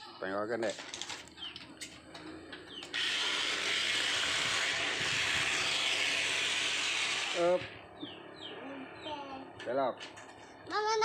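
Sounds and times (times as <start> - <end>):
excavator motor whirring hiss: 2.9 - 7.8.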